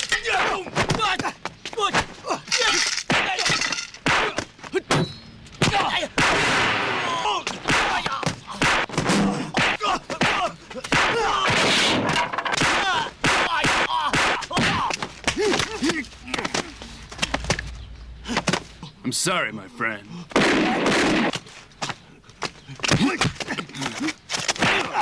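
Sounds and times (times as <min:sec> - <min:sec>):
grunts and shouts: 0:00.1 - 0:04.9, 0:07.0 - 0:11.6, 0:12.6 - 0:17.1, 0:22.1 - 0:25.0.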